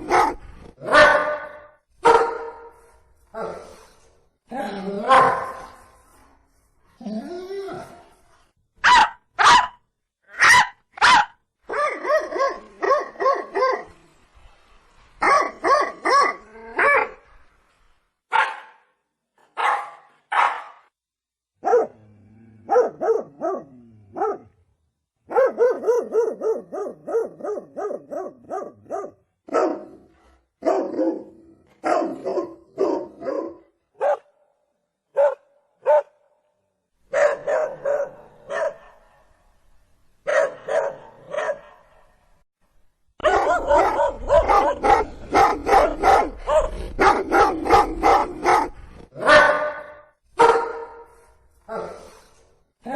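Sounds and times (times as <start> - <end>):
dog barking: 0.0 - 2.8, 5.1 - 5.7, 8.8 - 13.9, 15.2 - 17.2, 18.3 - 18.9, 19.6 - 20.9, 21.6 - 22.0, 22.7 - 24.5, 25.3 - 30.0, 30.6 - 34.4, 35.1 - 36.2, 37.1 - 39.2, 40.2 - 41.9, 43.2 - 51.2.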